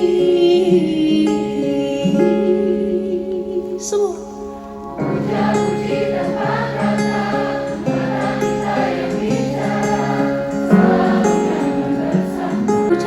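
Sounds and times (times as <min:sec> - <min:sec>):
crowd singing along: 0:05.0 - 0:13.0.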